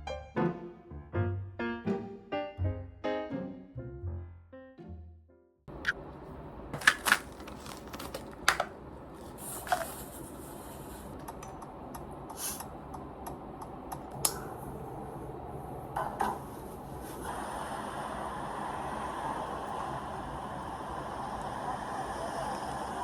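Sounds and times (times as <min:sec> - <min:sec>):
room noise: 0:05.7 - 0:23.0
small hard objects clinking: 0:06.8 - 0:10.0.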